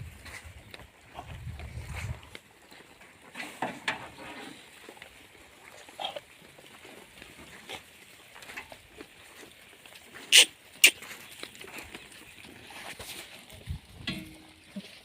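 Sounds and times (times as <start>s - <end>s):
goats calling: 9.2s - 13.1s.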